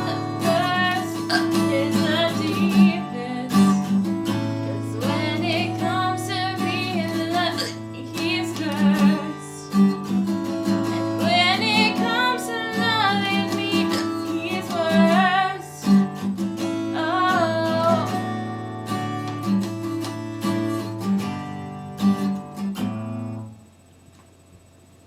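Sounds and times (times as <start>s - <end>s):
person singing: 0.0s - 9.7s, 10.9s - 16.0s, 17.0s - 18.2s
acoustic guitar strumming: 0.0s - 23.6s.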